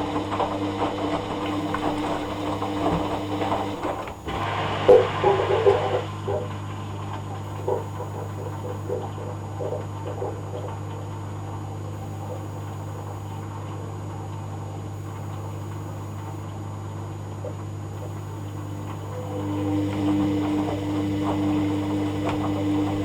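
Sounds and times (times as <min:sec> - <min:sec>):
steady low hum: 0:00.0 - 0:04.5, 0:07.3 - 0:14.0, 0:14.6 - 0:16.6, 0:17.8 - 0:23.0
water running through washing machine: 0:00.0 - 0:16.2, 0:17.0 - 0:23.0.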